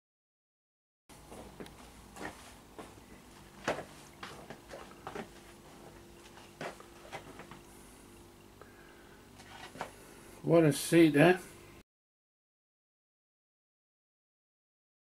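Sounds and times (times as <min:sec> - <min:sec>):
faint steady hum: 0:01.1 - 0:11.8.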